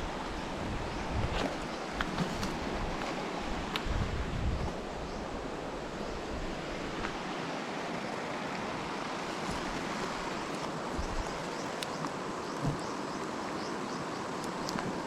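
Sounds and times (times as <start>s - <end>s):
wind buffeting microphone: 0.0s - 5.5s, 9.5s - 11.6s.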